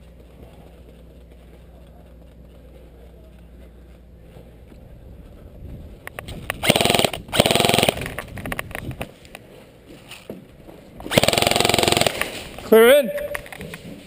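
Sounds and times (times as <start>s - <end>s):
electric airsoft gun firing bursts: 6.4s - 8.3s, 11.0s - 12.6s.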